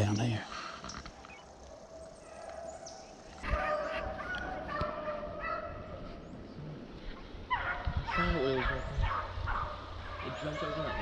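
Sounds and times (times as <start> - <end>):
dogs baying in the distance: 1.4 - 6.2, 7.1 - 11.0.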